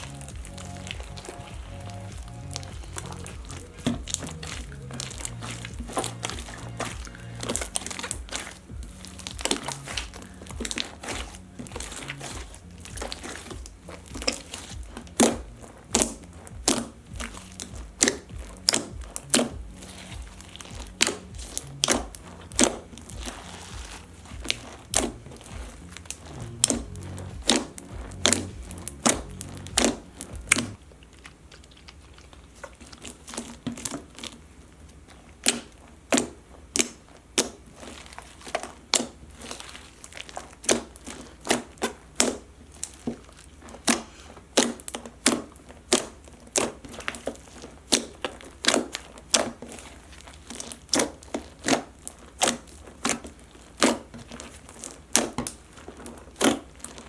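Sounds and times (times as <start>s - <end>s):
low rumble: 0.0s - 30.8s
hands kneading slime: 0.0s - 57.0s
sharp clicks and pops of slime: 35.4s - 37.6s.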